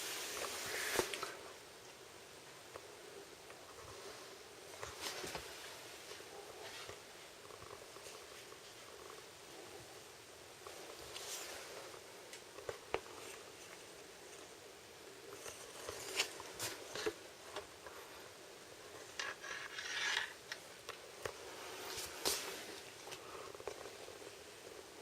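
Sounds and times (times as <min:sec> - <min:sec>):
rough scraping rub: 0:19.2 - 0:20.4.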